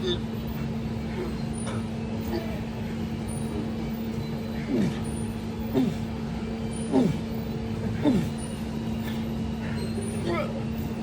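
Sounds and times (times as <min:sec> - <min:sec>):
man grunting: 0:00.0 - 0:00.3, 0:02.2 - 0:02.8, 0:04.6 - 0:05.1, 0:05.7 - 0:06.1, 0:06.9 - 0:08.4, 0:10.2 - 0:10.6
steady hum: 0:00.0 - 0:11.0.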